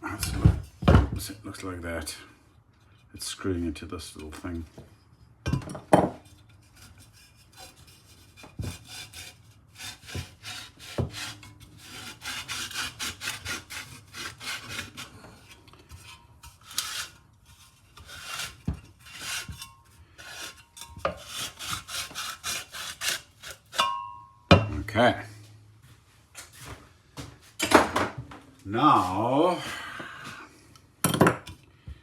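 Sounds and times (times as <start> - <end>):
hand tools scraping metal: 0.0 - 2.0, 6.2 - 25.6.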